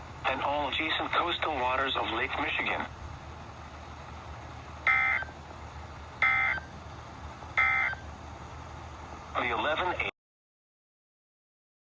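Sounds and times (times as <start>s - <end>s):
faint radio hiss: 0.0s - 4.8s, 8.6s - 10.1s
steady low hum: 0.0s - 10.1s
warbling data tone bursts: 4.9s - 5.3s, 6.2s - 6.7s, 7.6s - 8.0s.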